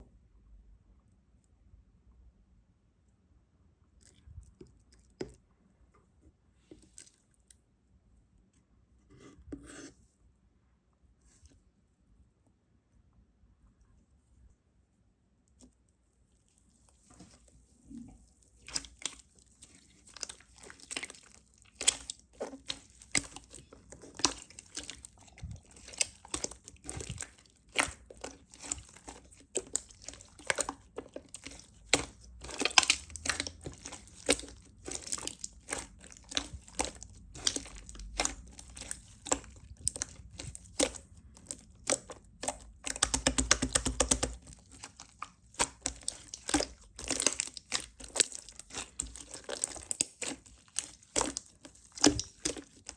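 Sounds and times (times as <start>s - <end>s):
slime squeezed with sticky crackles: 17.9s - 52.9s.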